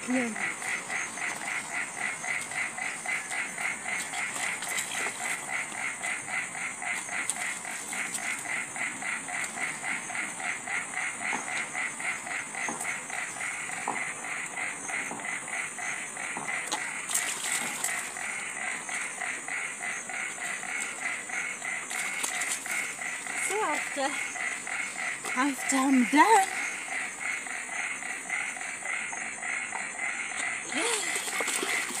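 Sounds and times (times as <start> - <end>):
repeating animal call: 17.6 - 32.0.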